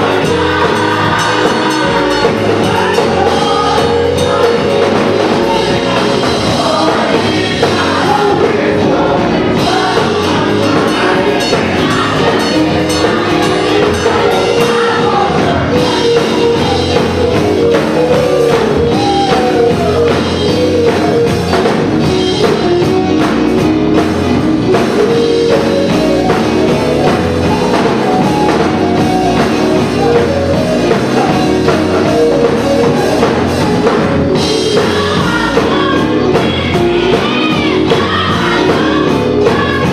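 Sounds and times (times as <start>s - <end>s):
drum kit beat: 0.0s - 39.9s
gospel choir singing: 0.0s - 39.9s
live band playing: 0.0s - 39.9s.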